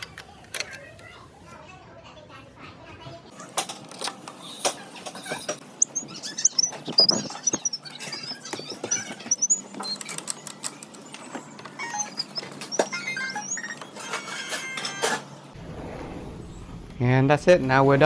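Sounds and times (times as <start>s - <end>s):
high wavering squeaks: 4.4s - 15.0s.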